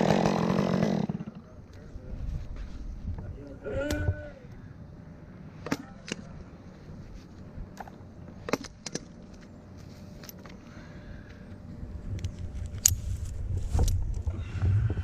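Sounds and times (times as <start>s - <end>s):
metallic clinks of climbing gear: 7.7s - 10.7s, 12.1s - 14.3s.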